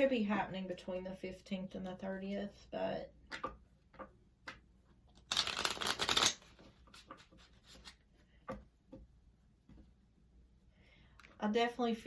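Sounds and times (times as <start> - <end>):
cards riffling: 5.2 - 8.0.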